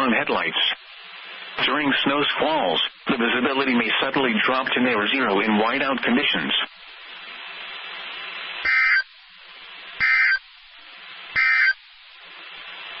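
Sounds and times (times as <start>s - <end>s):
radio hiss: 0.0s - 13.0s
digital data tone bursts: 8.6s - 9.1s, 10.0s - 10.4s, 11.4s - 11.8s.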